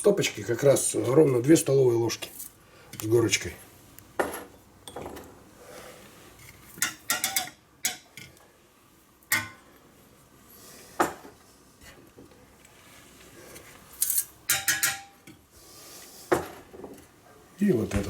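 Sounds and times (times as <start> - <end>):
glasses and dishes clinking: 14.5 - 15.2.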